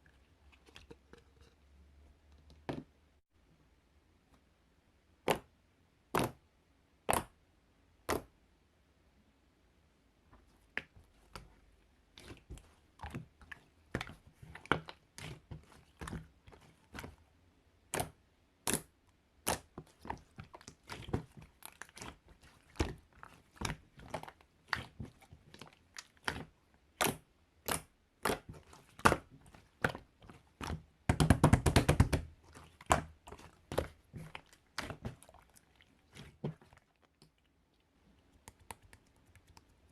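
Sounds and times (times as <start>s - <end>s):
slime squished by hand: 17.9s - 37.4s.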